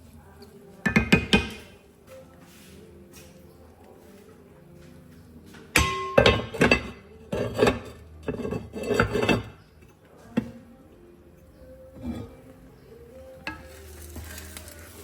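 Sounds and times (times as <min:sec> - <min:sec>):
hard objects clattering and clinking: 0:05.8 - 0:09.6.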